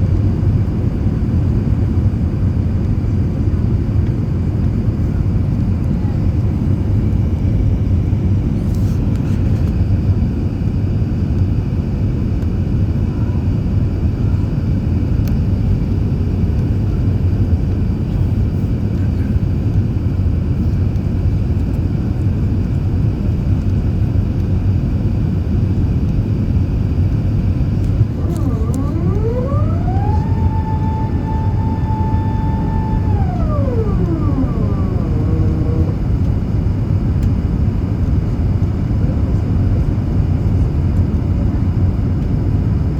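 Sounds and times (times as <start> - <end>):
jet engines rumbling: 27.1 - 38.0
high-pitched tone: 28.2 - 36.1.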